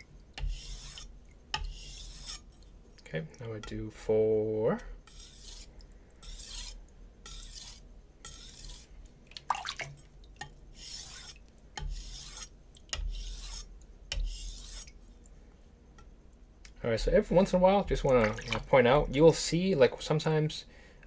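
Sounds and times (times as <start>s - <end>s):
knife scraping on whetstone: 0.4s - 2.7s, 5.0s - 8.9s, 10.4s - 15.0s.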